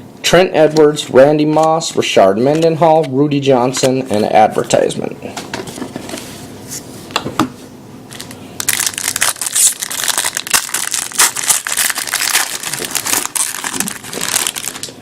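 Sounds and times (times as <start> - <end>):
wrapper tearing and crinkling: 8.1 - 15.0.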